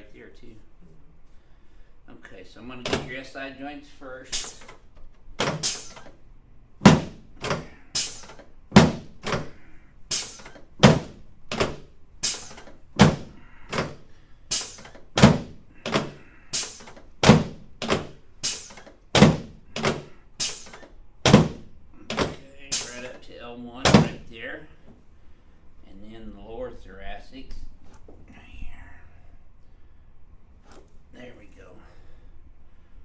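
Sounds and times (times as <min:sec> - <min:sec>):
adjusting table knocking thunks: 0:06.8 - 0:14.0, 0:14.6 - 0:16.2, 0:16.8 - 0:20.2, 0:21.2 - 0:22.4, 0:23.8 - 0:24.2.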